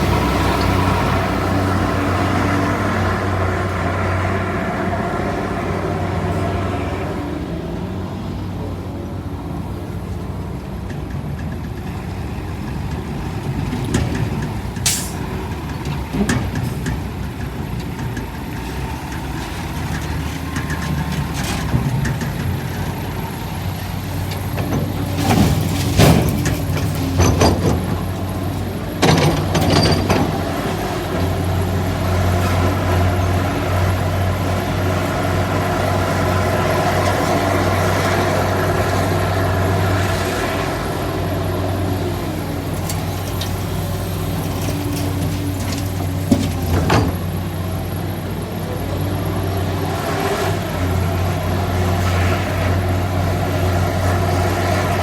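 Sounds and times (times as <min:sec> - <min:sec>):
diesel engine running: 0:00.0 - 0:55.0
metallic clanks and knocks: 0:24.3 - 0:30.6, 0:42.8 - 0:47.4.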